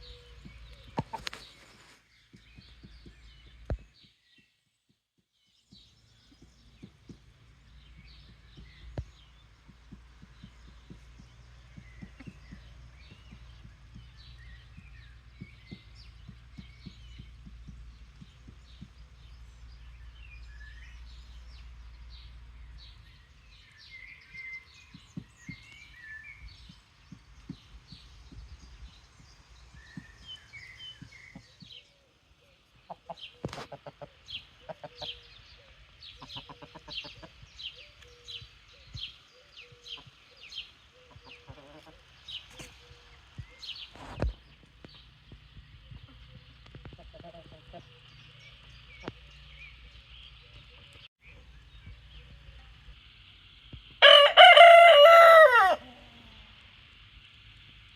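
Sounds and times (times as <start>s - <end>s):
chickens clucking: 0.0s - 3.8s, 6.3s - 19.4s, 32.6s - 38.2s, 39.1s - 51.0s
small birds chirping: 0.0s - 57.9s
rapid chirps and clicks: 5.9s - 19.8s.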